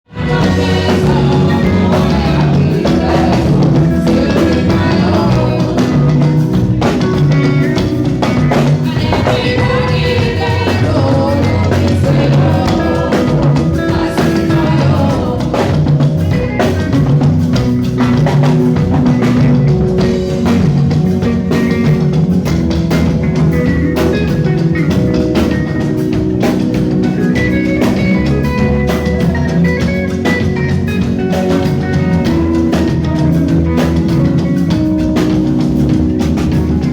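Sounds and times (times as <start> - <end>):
guitar: 0.0 - 36.9
person singing: 0.1 - 6.6, 8.8 - 16.2
drum kit: 0.1 - 36.9
live rock band playing: 0.1 - 36.9.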